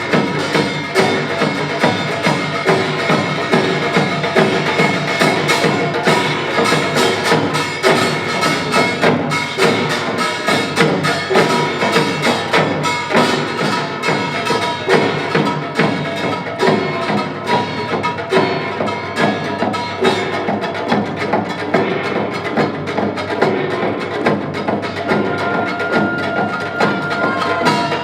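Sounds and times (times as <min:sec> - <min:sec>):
percussion ensemble drumming: 0:00.0 - 0:28.0
ringing metallic tones: 0:24.7 - 0:28.0.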